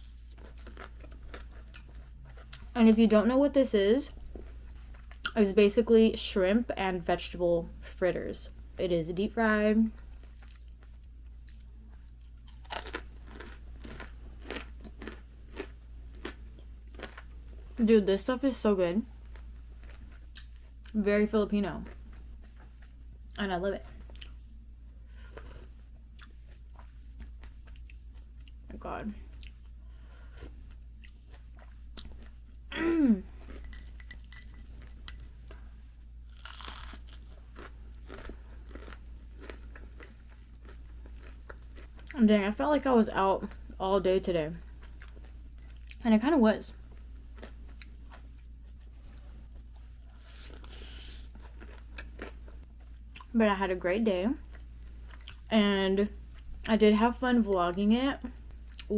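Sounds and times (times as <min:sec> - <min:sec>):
chewing crunches: 0:00.0 - 0:02.8, 0:10.2 - 0:17.4, 0:19.2 - 0:21.0, 0:36.3 - 0:42.2, 0:47.4 - 0:53.3
crunchy bite into fritter: 0:36.3 - 0:39.6.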